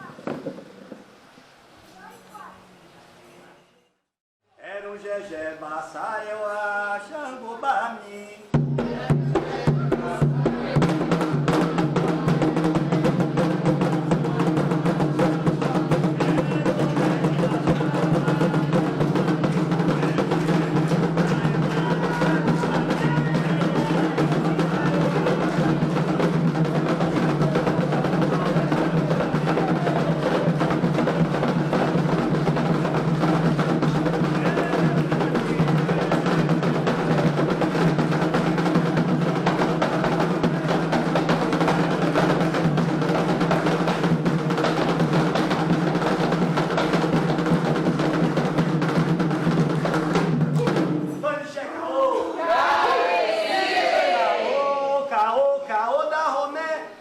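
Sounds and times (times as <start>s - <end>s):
hand drums playing fast rhythm: 8.6s - 51.1s
sharp clacking percussion: 8.6s - 51.1s.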